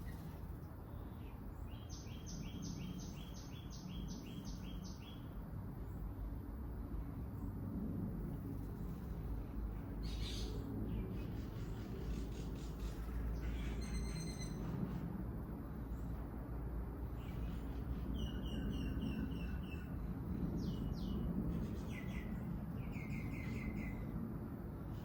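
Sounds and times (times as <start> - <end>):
small bird calling sharp notes: 12.1 - 14.7.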